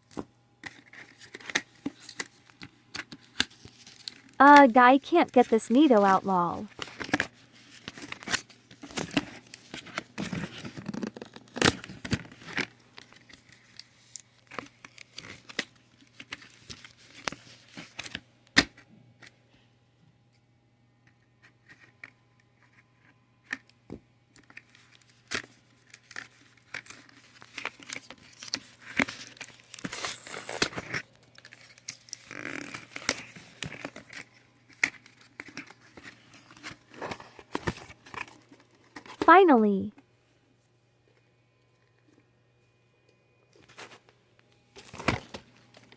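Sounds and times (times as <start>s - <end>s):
cardboard and plastic packaging rustling: 0.0s - 18.8s, 24.4s - 39.7s, 44.7s - 45.9s.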